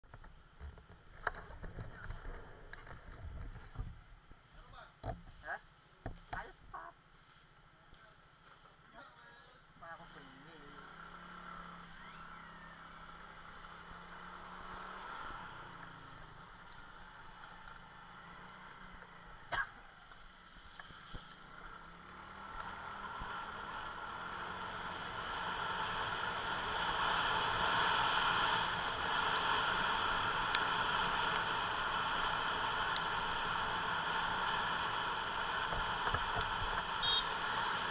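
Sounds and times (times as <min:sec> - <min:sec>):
motor scooter running: 0:10.2 - 0:37.9.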